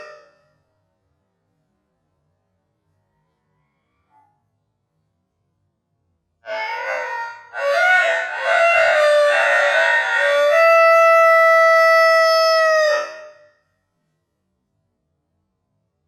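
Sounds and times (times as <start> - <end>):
slowed rooster crow: 0.0 - 0.4, 6.5 - 13.5.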